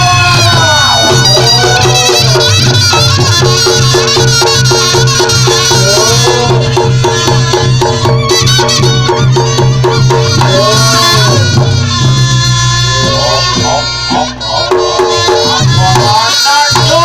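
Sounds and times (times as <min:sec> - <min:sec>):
drums and gongs beat: 0:00.0 - 0:17.0
shawm melody: 0:00.0 - 0:17.0.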